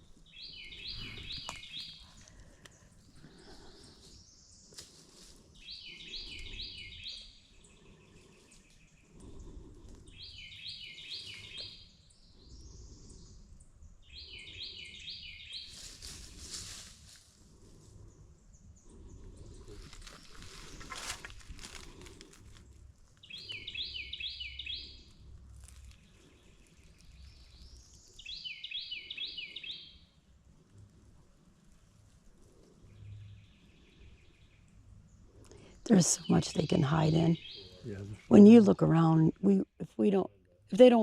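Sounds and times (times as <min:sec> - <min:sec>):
songbird singing: 0:00.0 - 0:15.9, 0:23.1 - 0:31.0, 0:31.7 - 0:41.0
rustling: 0:15.7 - 0:17.5, 0:19.7 - 0:23.3, 0:25.1 - 0:28.1.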